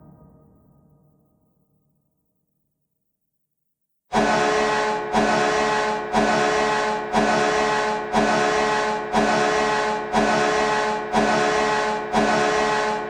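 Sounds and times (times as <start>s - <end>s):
goal horn blasting a chord: 4.1s - 13.0s.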